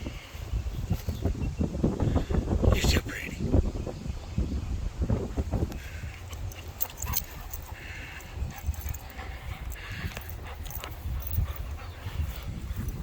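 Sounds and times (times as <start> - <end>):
wind rumble on microphone: 0.0 - 13.0
dogs moving about: 6.2 - 13.0.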